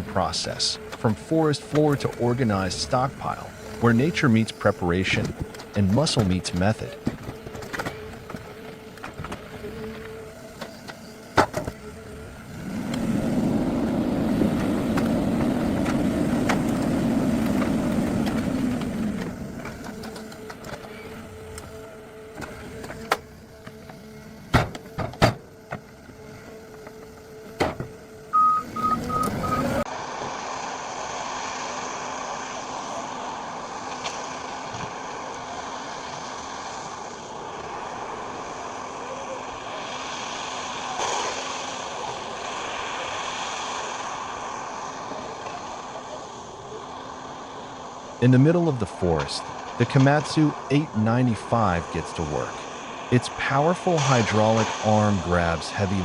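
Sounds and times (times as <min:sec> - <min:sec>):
diesel engine revving: 0:12.5 - 0:20.0, 0:28.3 - 0:29.9
short beeps: 0:28.4 - 0:29.8.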